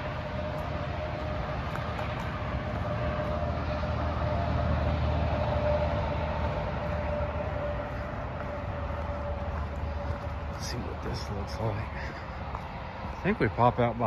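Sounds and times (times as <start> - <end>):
highway traffic rumble: 0.0 - 14.0.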